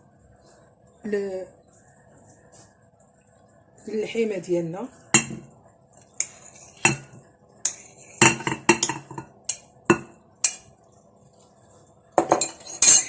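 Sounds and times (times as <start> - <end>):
utensils and dishes clinking: 6.0 - 10.7, 12.2 - 13.0.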